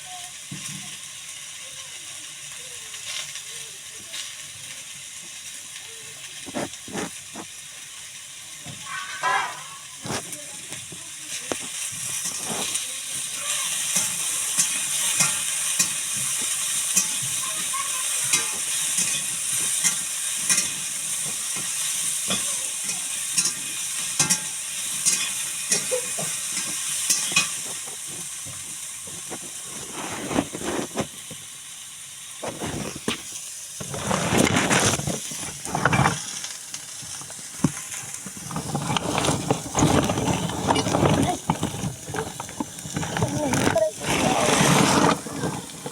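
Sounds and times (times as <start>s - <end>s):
food sizzling in oil: 0.0s - 45.9s
stirring clicks and scrapes: 6.2s - 7.6s, 8.6s - 31.4s, 32.4s - 45.9s
irregular knocks and scrapes: 6.4s - 7.5s, 32.4s - 36.4s, 37.2s - 45.9s.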